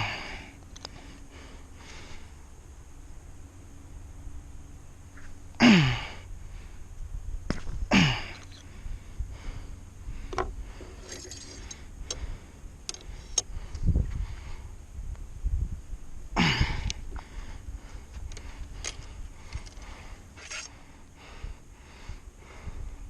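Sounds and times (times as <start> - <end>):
man grunting: 5.6 - 6.2, 7.9 - 8.3.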